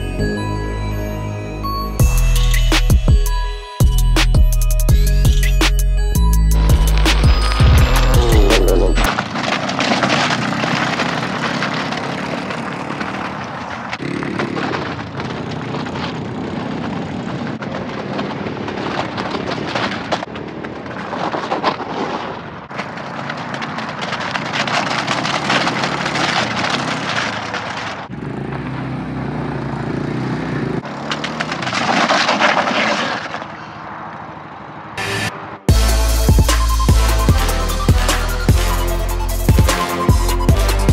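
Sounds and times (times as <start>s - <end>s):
small vehicle engine: 6.6s - 21.4s, 22.7s - 35.3s
cans crunching under wheels: 9.0s - 28.1s, 30.8s - 34.1s.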